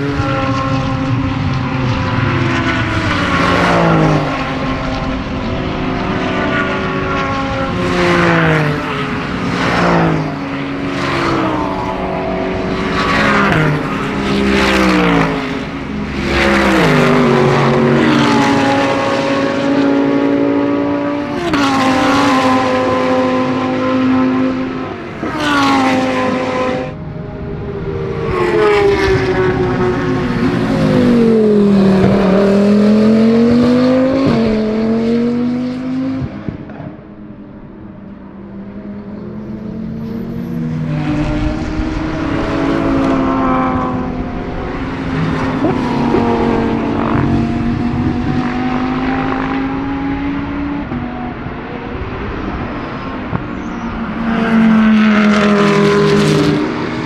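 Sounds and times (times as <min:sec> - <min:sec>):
race car engines passing: 0:00.0 - 0:57.0.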